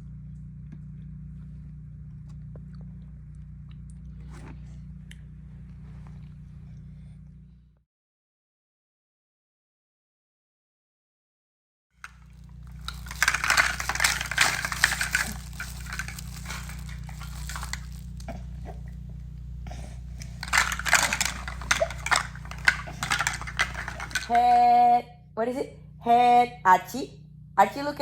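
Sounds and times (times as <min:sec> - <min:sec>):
steady low hum: 0:00.0 - 0:07.8, 0:12.0 - 0:28.0
crackling crinkling rustle: 0:12.0 - 0:24.5.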